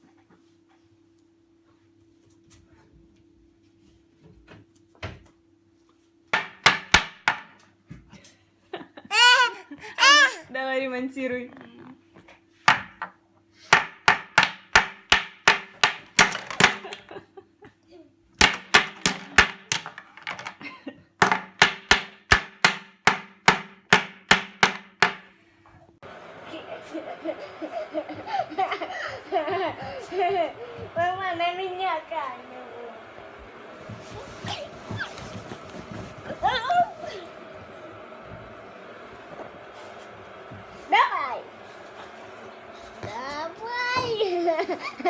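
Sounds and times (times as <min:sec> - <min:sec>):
hammer knocking: 0:06.3 - 0:07.6, 0:13.7 - 0:16.8, 0:21.2 - 0:25.3.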